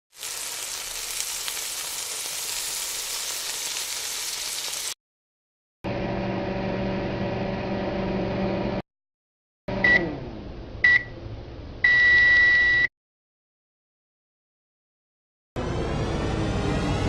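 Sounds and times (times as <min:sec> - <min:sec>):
food sizzling in a frying pan: 0:00.1 - 0:05.0.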